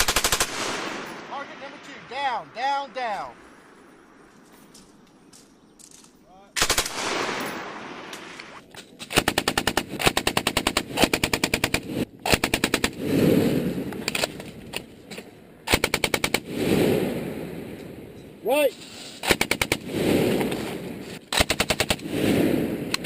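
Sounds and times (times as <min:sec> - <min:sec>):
machine gun firing: 0:00.0 - 0:01.9, 0:06.6 - 0:08.4, 0:09.1 - 0:13.2, 0:15.7 - 0:16.9, 0:19.2 - 0:20.6, 0:21.3 - 0:22.4
gunfire echo rolling away: 0:00.0 - 0:03.8, 0:06.6 - 0:14.9.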